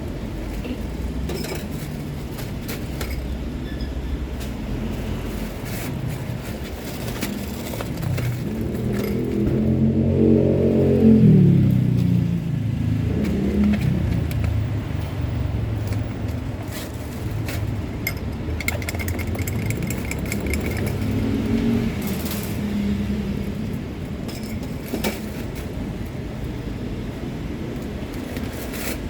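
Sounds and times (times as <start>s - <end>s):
vehicles passing on road: 0.0s - 29.0s
light clicks and clatter: 5.6s - 9.7s, 13.1s - 22.6s.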